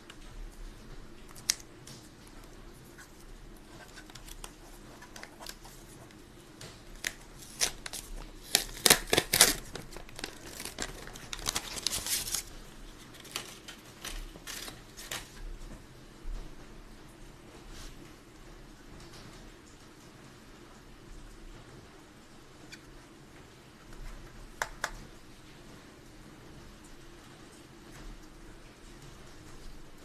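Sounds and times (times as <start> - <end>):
rustling: 1.3 - 15.5.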